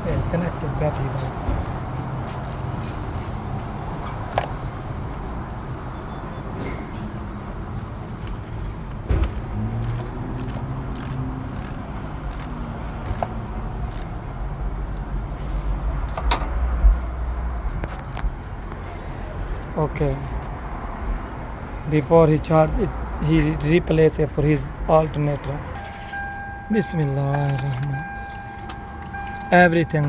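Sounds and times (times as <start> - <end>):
metallic clicks of hand tools: 2.3 - 3.4, 8.9 - 13.3, 13.9 - 14.1.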